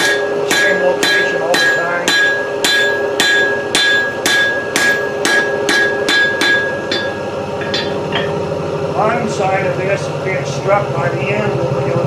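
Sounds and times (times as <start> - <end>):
hammer striking hot steel on anvil: 0.0 - 8.5
anvil ringing: 0.0 - 8.6.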